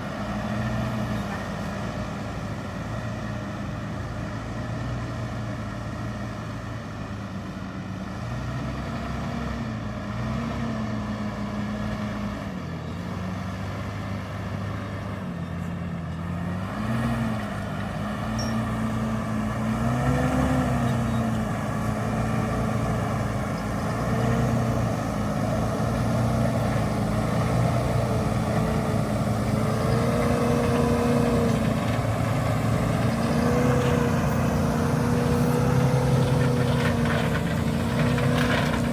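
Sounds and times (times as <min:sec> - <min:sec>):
tractor engine under load: 0:11.2 - 0:38.9.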